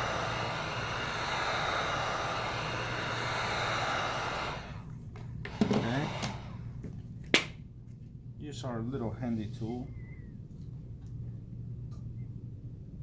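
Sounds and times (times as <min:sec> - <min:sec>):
heat gun blowing: 0:00.0 - 0:06.9.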